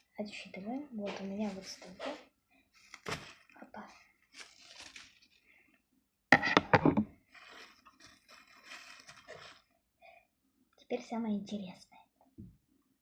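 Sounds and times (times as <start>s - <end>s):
rustling and scraping plastic: 1.0s - 5.6s, 6.4s - 9.8s.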